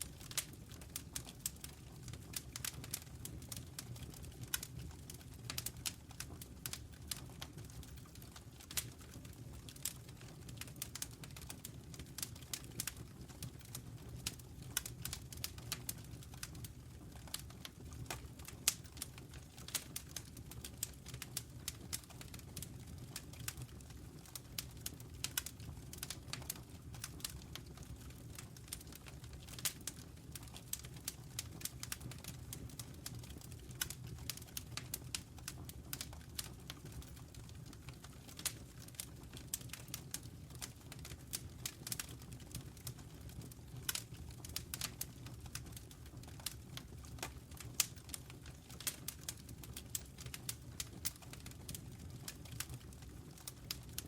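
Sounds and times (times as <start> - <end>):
low steady fire rumble: 0.0 - 54.0
wood fire crackling and popping: 0.0 - 54.0.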